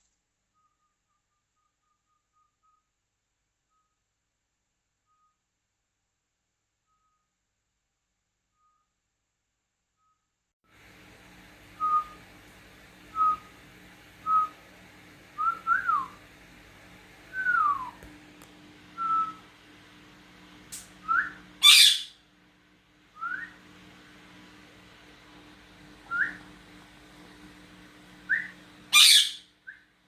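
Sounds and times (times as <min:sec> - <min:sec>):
parrot squawking: 0:21.6 - 0:22.2, 0:28.9 - 0:29.5.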